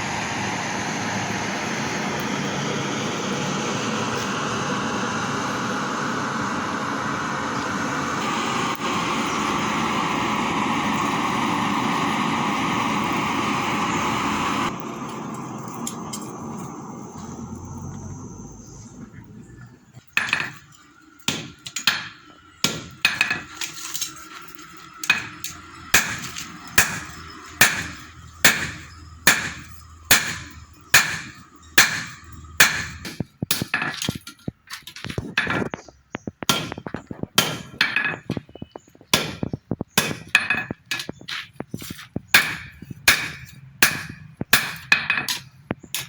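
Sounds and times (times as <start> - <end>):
hammer striking iron on anvil: 20.2 - 20.6, 21.3 - 23.7, 25.0 - 34.2, 36.5 - 38.4, 39.2 - 41.1, 42.4 - 46.0.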